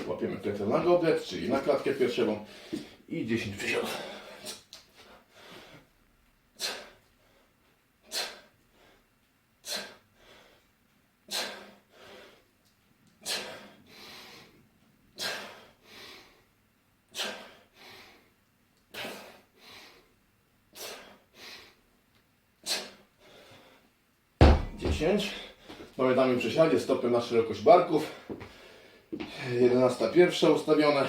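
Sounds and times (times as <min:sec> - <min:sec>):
person breathing hard: 0:03.8 - 0:05.9, 0:06.5 - 0:10.7, 0:11.3 - 0:12.5, 0:13.2 - 0:16.5, 0:17.1 - 0:20.2, 0:20.8 - 0:21.8, 0:22.6 - 0:23.9, 0:28.0 - 0:29.6.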